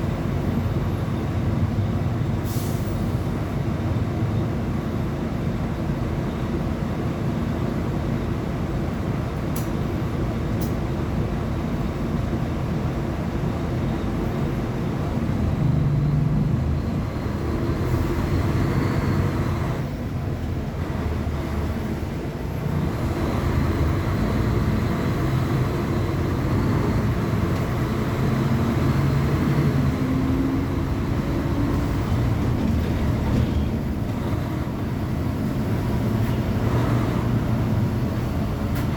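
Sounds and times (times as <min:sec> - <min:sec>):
bus diesel engine running: 0:00.0 - 0:38.9.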